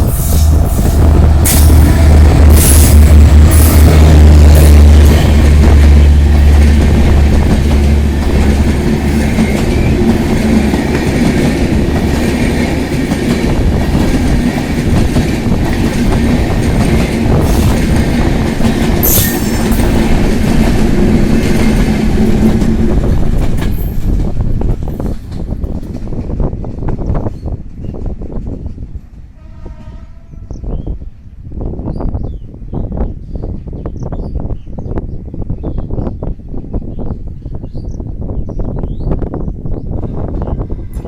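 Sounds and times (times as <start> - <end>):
train rumbling past on rails: 0.0 - 41.0
wheels clickety-clack: 5.1 - 27.0.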